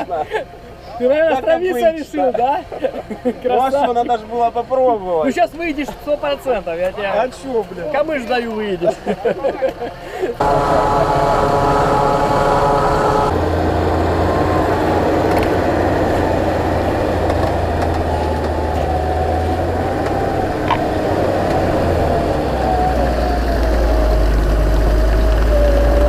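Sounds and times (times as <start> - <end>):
off-road vehicle engine droning: 10.1 - 26.0.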